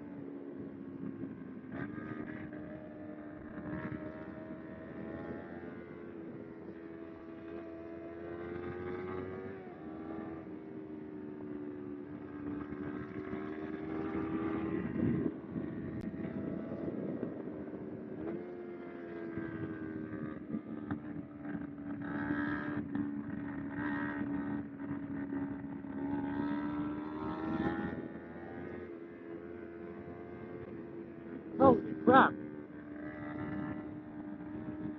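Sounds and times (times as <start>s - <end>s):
motorcycle engine running: 0.0s - 34.9s
wind noise: 12.6s - 18.4s.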